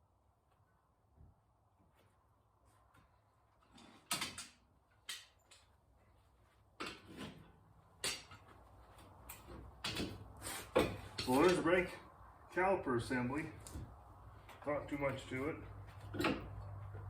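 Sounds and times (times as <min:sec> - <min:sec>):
metal clunks and scrapes: 0:03.6 - 0:05.2, 0:06.8 - 0:11.7, 0:15.9 - 0:17.0.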